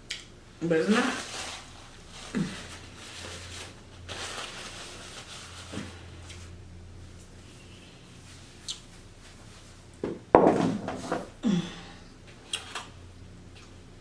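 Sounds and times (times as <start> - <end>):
steady low hum: 0.0 - 14.0
person humming briefly: 11.4 - 12.0.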